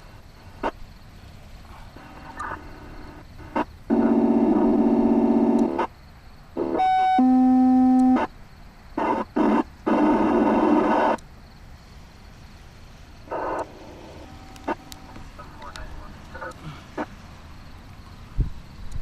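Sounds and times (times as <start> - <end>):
buzzy radio tone: 1.7 - 5.9, 9.0 - 11.2, 13.3 - 17.1
radio static bursts: 1.7 - 5.9, 6.6 - 8.3, 9.0 - 11.2, 13.2 - 17.2
steady radio tone: 1.7 - 5.9, 9.0 - 11.2, 13.3 - 17.2.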